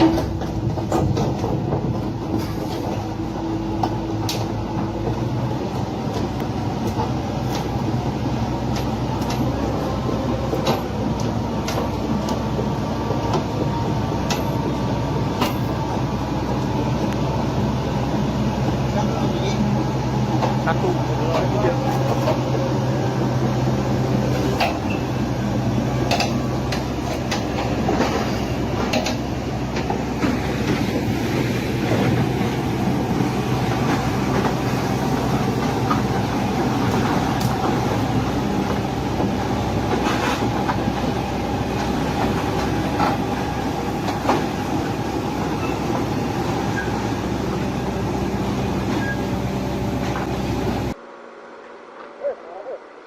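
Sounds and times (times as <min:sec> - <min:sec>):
knocks and clanks: 0:00.0 - 0:03.1, 0:24.4 - 0:25.1, 0:26.0 - 0:31.1
heavy machine engine running: 0:00.0 - 0:52.0.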